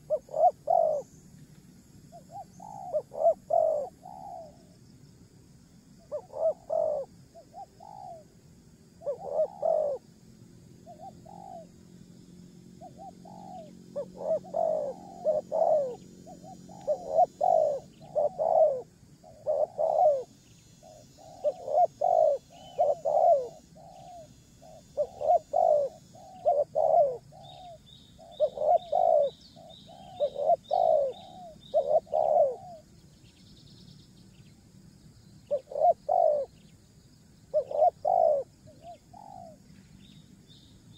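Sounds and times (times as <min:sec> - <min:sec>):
dove cooing: 0:00.0 - 0:01.2, 0:02.1 - 0:04.8, 0:06.0 - 0:08.3, 0:09.0 - 0:10.1, 0:10.8 - 0:11.9, 0:12.7 - 0:32.9, 0:35.5 - 0:36.6, 0:37.5 - 0:39.7
bird chirping: 0:00.0 - 0:08.3, 0:09.0 - 0:10.1, 0:10.8 - 0:40.9.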